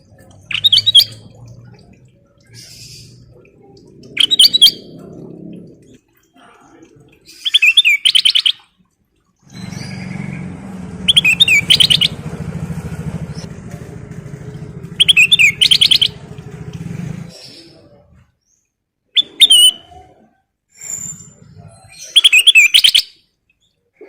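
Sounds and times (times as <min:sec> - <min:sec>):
low engine drone: 0:00.0 - 0:06.1, 0:09.5 - 0:18.3
bulbul singing: 0:00.0 - 0:08.8, 0:09.4 - 0:18.6, 0:21.0 - 0:23.7.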